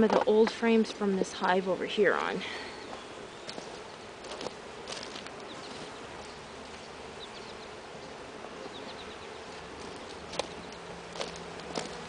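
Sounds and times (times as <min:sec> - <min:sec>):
honeybees buzzing: 0:00.0 - 0:12.0.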